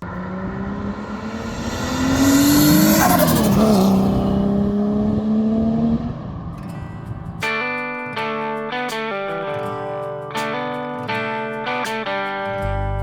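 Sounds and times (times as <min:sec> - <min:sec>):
vehicle passing by: 0:00.0 - 0:07.3
car engine running steadily: 0:00.0 - 0:07.4.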